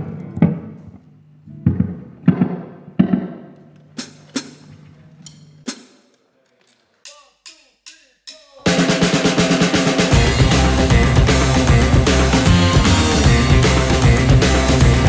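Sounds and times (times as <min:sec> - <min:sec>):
drum hits: 0:04.0 - 0:04.7, 0:08.3 - 0:15.0
quick falling notes: 0:08.7 - 0:15.0
rockabilly band playing: 0:08.7 - 0:15.0.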